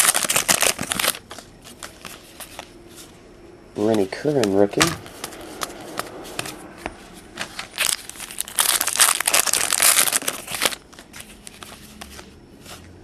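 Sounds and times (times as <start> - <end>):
plastic wrapper crinkling: 0.0 - 2.7, 7.4 - 12.9.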